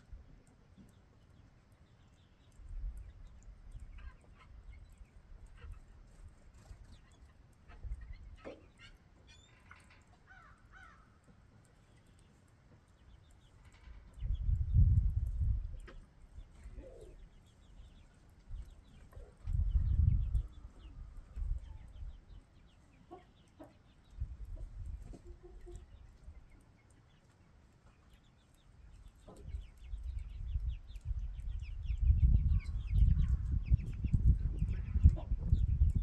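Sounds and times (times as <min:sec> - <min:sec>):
chickens clucking: 0:03.7 - 0:10.3, 0:11.7 - 0:36.0
low rumble on microphone: 0:13.9 - 0:16.9, 0:18.5 - 0:22.4, 0:29.3 - 0:36.0.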